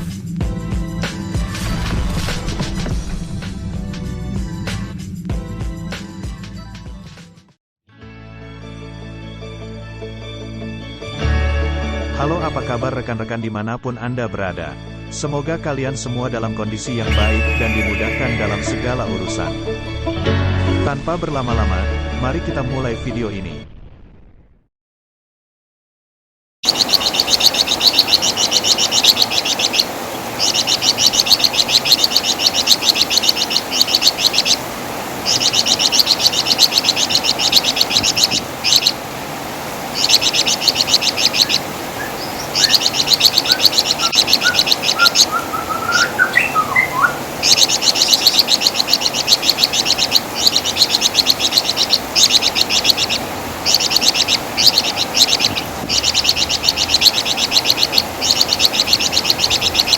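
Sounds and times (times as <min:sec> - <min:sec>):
songbird shrill trills: 0:17.1 - 0:19.6, 0:26.7 - 0:34.6, 0:35.2 - 0:39.0, 0:40.0 - 0:59.9
lower rising bird notes: 0:17.1 - 0:20.9, 0:26.7 - 0:34.6, 0:35.2 - 0:39.0, 0:39.9 - 0:59.9.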